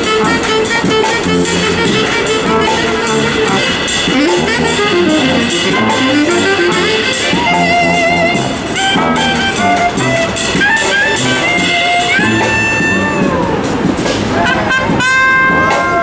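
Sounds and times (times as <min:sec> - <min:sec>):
instrumental music with beat: 0:00.0 - 0:16.0.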